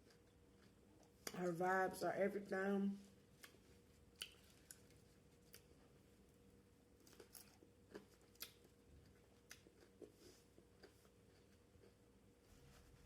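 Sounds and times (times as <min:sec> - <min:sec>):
faint chewing: 0:00.0 - 0:01.5, 0:03.1 - 0:06.4, 0:07.0 - 0:13.0.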